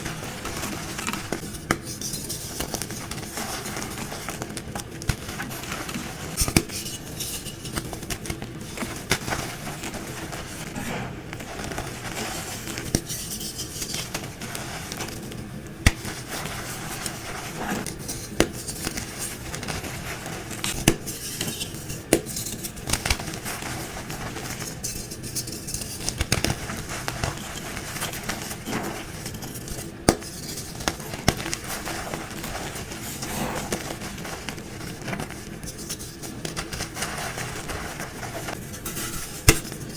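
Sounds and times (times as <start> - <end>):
chalk crunching: 8.7 - 39.9.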